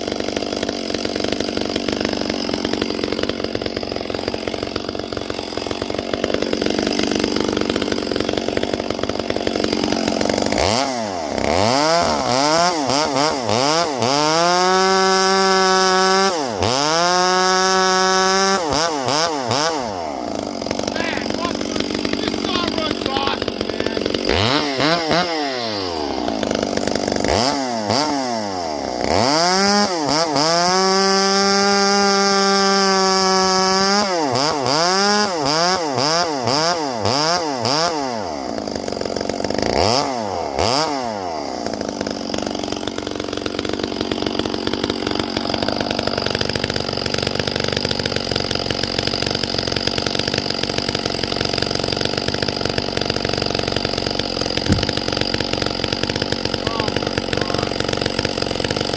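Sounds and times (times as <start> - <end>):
chainsaw revving: 0.0 - 58.9.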